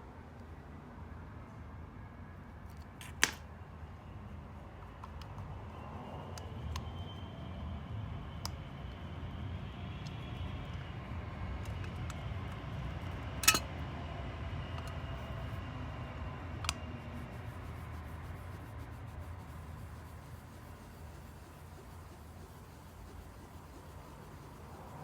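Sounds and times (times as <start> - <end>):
metallic clicks of small parts: 13.4 - 13.6.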